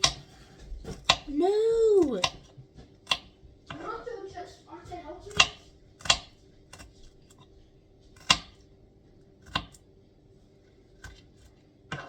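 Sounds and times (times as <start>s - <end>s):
knife chopping on cutting board: 0.0s - 1.3s, 5.3s - 7.4s, 8.2s - 8.6s, 9.4s - 9.8s.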